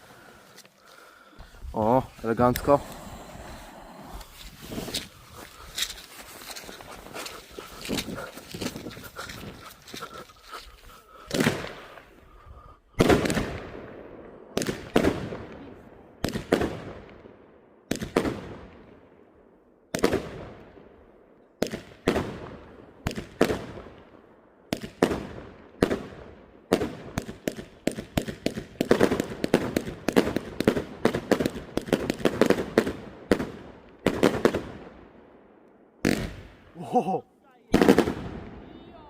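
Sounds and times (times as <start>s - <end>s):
fireworks bangs echoing: 11.2s - 12.1s, 13.0s - 17.3s, 24.7s - 35.0s, 36.0s - 36.8s, 37.7s - 39.0s.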